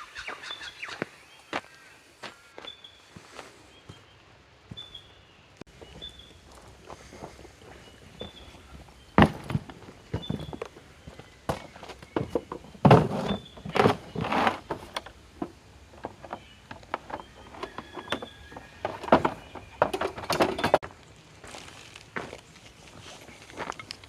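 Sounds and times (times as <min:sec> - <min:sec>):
irregular knocks and thuds: 0:09.2 - 0:20.8.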